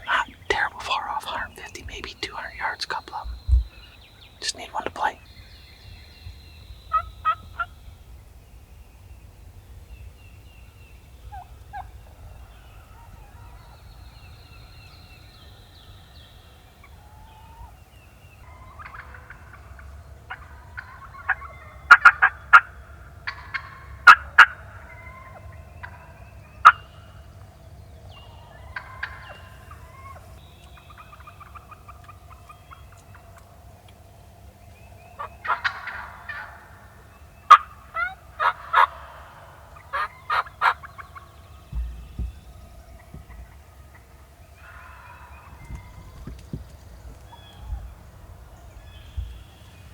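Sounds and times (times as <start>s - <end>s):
faint small-bird chirps: 0.2s - 7.9s
turkeys gobbling: 18.5s - 27.1s, 28.2s - 33.9s, 35.2s - 49.9s.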